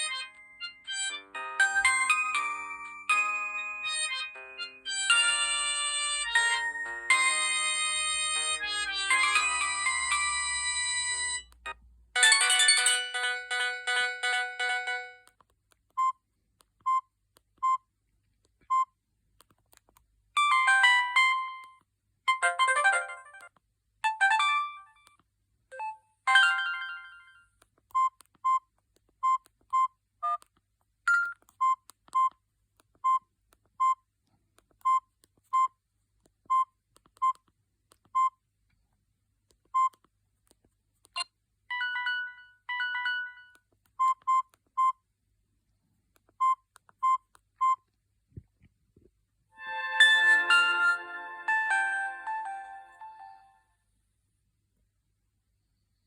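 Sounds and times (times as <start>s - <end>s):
phone ringtone melodies: 0.0s - 15.2s, 20.4s - 21.7s, 22.3s - 23.5s, 24.1s - 25.0s, 25.8s - 27.5s, 41.7s - 43.6s, 49.6s - 53.7s.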